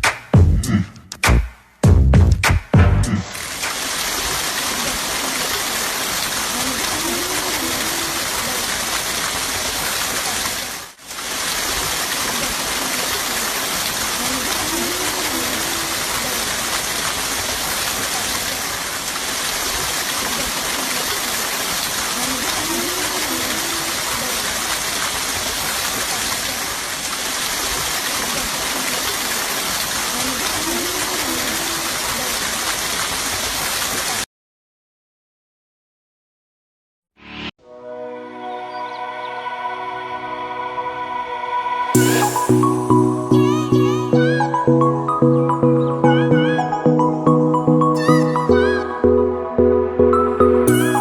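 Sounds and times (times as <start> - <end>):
spring water rushing: 3.2 - 34.2.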